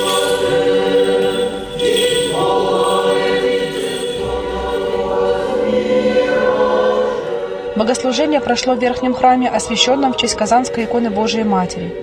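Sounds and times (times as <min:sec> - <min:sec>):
choir singing sustained chords: 0:00.0 - 0:12.0.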